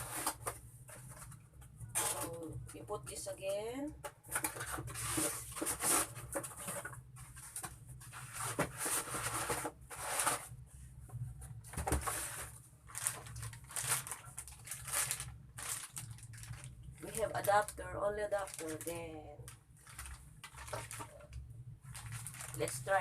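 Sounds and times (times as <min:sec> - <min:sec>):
packaging rustling: 0:04.3 - 0:10.5, 0:11.8 - 0:23.0.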